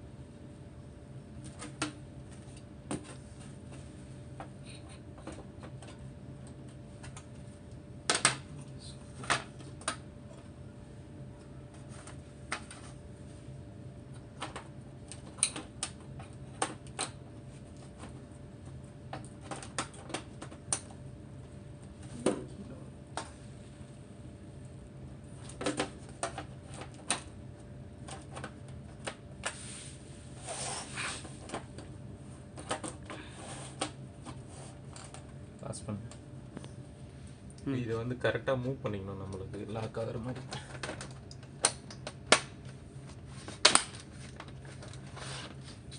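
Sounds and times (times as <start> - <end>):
rustling scrape: 29.6 - 31.4, 43.3 - 45.9.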